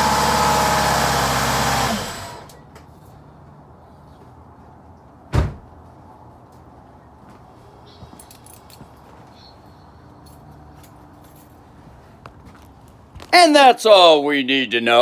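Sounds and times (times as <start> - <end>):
car engine idling: 0.0 - 2.6
loud thump: 5.3 - 5.7.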